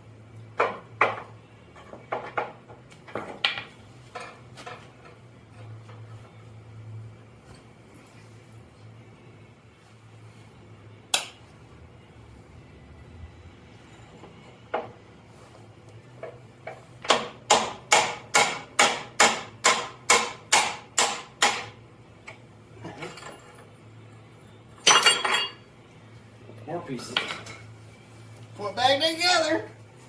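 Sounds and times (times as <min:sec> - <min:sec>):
hammer striking metal: 0:17.1 - 0:21.8.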